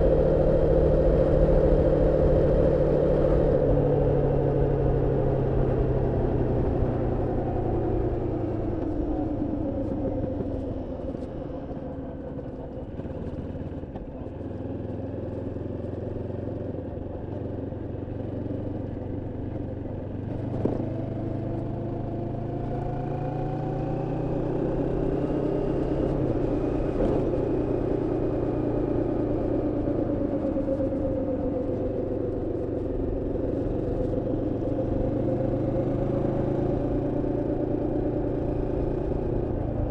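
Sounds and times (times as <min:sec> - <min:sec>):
motorcycle engine revving: 0:20.2 - 0:39.9.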